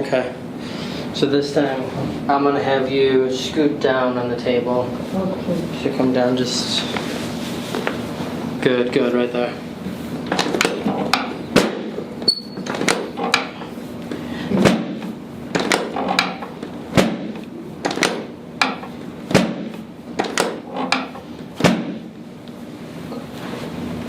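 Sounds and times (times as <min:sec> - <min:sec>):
sharp clicks and knocks: 0:10.2 - 0:13.7, 0:14.6 - 0:22.0.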